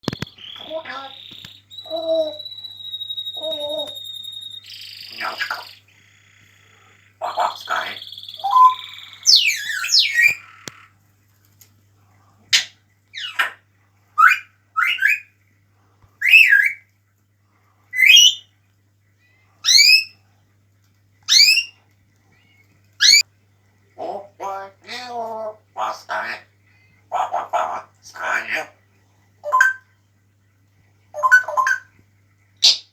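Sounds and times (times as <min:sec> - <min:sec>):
parrot whistling: 0:00.0 - 0:05.8, 0:07.4 - 0:10.4, 0:14.2 - 0:15.3, 0:16.2 - 0:16.8, 0:18.0 - 0:18.4, 0:19.6 - 0:20.2, 0:21.3 - 0:21.7, 0:23.0 - 0:23.2.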